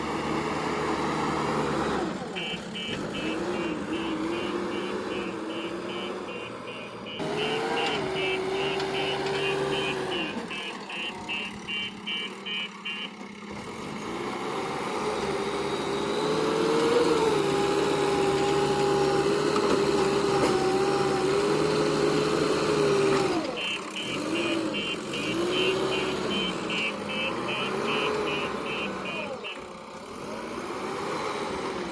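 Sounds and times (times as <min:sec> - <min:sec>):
diesel engine revving: 0:00.0 - 0:31.9
reversing alarm beeping: 0:02.4 - 0:13.1, 0:23.3 - 0:29.6.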